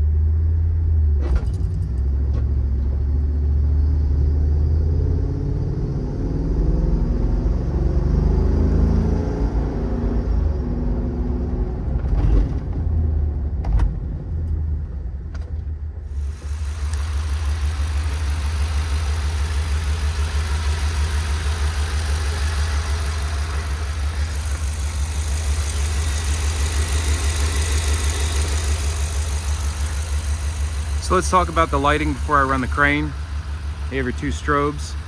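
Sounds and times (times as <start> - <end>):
truck engine idling: 12.8 - 35.0.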